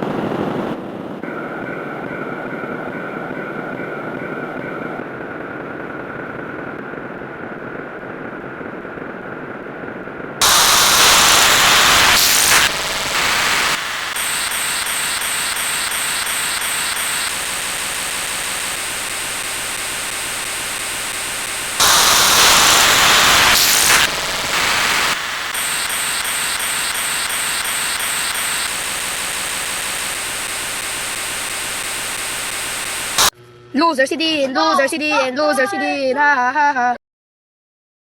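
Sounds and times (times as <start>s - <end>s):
fast even pulsing: 10.4s - 33.3s
static hiss: 10.4s - 33.3s.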